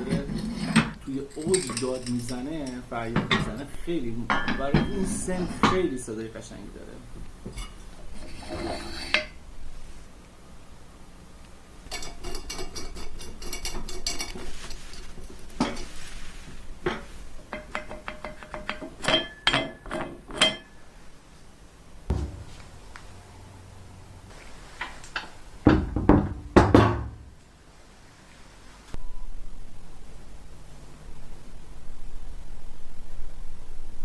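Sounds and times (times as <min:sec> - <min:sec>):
hard objects clattering and clinking: 0:00.0 - 0:03.6.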